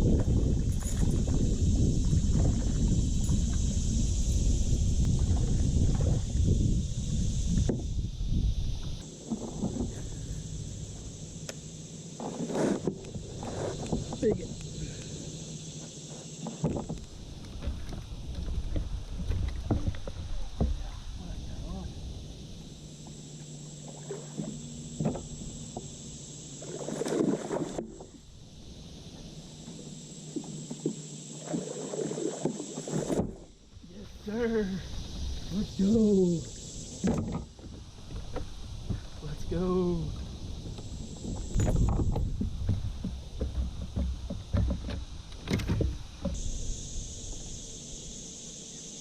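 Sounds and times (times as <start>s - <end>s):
knocks and thumps in kayak: 0.0s - 8.1s, 8.7s - 21.5s, 23.0s - 47.5s
insects droning: 0.0s - 49.0s
rustling and splashing: 8.8s - 21.5s, 22.7s - 48.6s
light knocks on a kayak: 41.6s - 46.4s.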